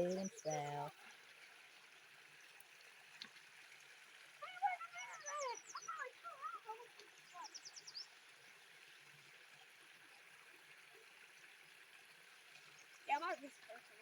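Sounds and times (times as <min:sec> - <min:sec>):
songbirds calling: 0:00.0 - 0:01.0, 0:04.2 - 0:09.1, 0:12.6 - 0:13.5.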